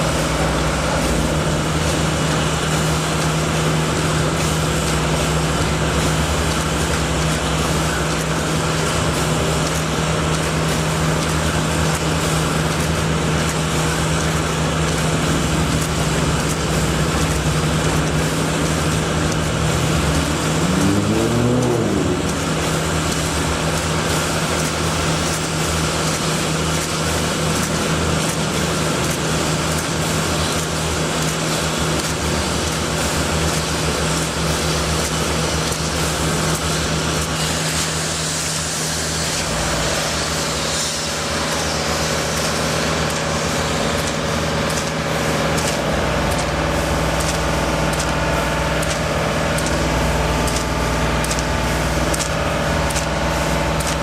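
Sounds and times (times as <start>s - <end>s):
road traffic noise: 0.0s - 54.0s
steady engine hum: 0.0s - 54.0s
engine revving: 15.7s - 26.4s.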